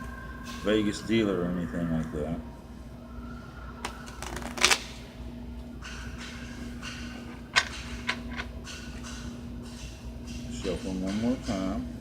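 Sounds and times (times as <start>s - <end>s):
cards snapping: 3.9s - 5.0s
playing cards riffling: 3.9s - 5.0s.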